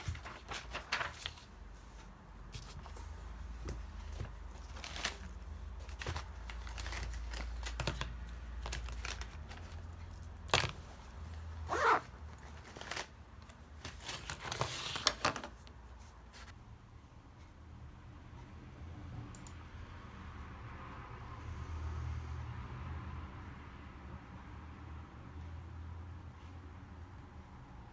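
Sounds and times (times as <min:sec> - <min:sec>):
rustling scrape: 0:00.0 - 0:07.7.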